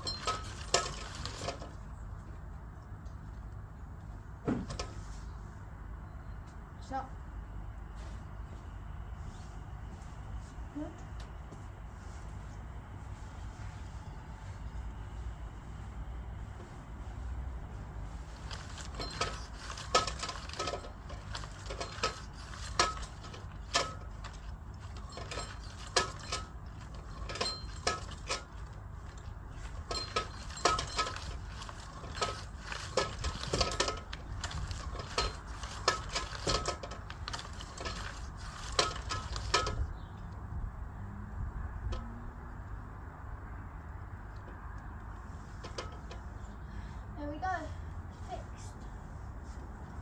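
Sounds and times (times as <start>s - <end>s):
small metal parts clinking: 0.0s - 1.8s, 18.3s - 39.8s.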